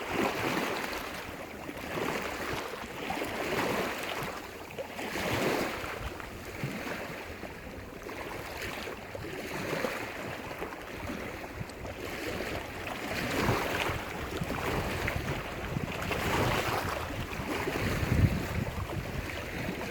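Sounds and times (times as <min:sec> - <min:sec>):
small waves breaking on shore: 0:00.0 - 0:19.9
wind buffeting microphone: 0:05.2 - 0:19.9.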